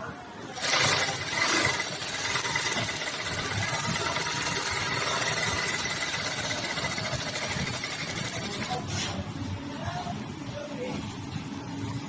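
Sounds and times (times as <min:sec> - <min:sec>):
sewing machine stitching: 0:00.6 - 0:08.8.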